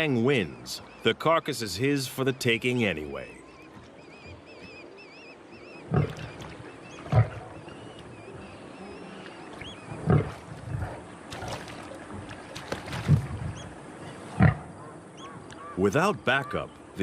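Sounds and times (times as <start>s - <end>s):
lion growling: 8.3s - 11.6s.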